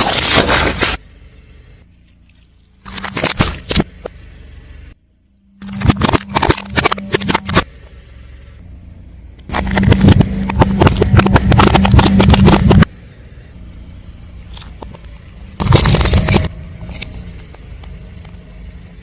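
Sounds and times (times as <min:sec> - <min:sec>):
low engine hum: 0:00.1 - 0:19.0
tyre crushing crunchy objects: 0:02.8 - 0:04.0, 0:09.5 - 0:12.9, 0:15.5 - 0:17.2.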